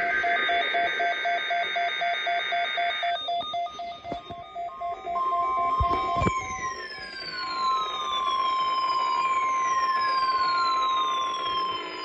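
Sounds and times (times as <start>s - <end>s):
stepping electronic alert tones: 0.0s - 7.9s
buzzing digital data tone: 0.0s - 12.0s
rapid electronic beeping: 0.0s - 12.0s
steady high tone: 0.0s - 12.0s.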